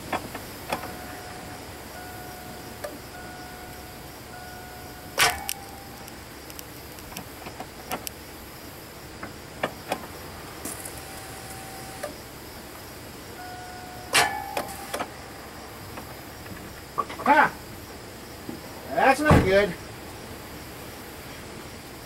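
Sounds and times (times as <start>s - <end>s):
faint steady tone: 0.0s - 7.2s, 7.8s - 19.0s
hand tool clicks and clinks: 5.2s - 7.2s.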